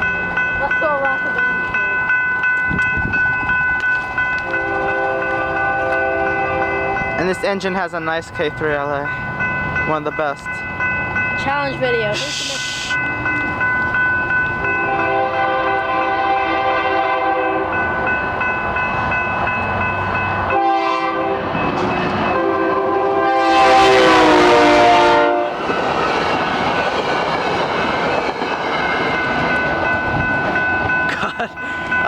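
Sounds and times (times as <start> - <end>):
crossing bells ringing: 0.0 - 32.0
train rails clattering: 0.0 - 32.0
locomotive air horn blasts: 4.6 - 7.0, 14.8 - 17.8, 20.5 - 21.6, 22.3 - 25.6.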